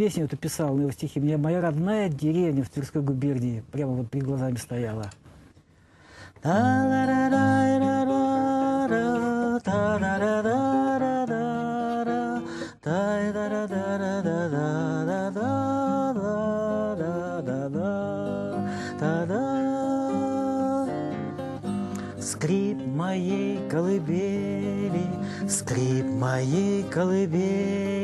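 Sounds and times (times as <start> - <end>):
guitar playing: 6.5 - 28.0.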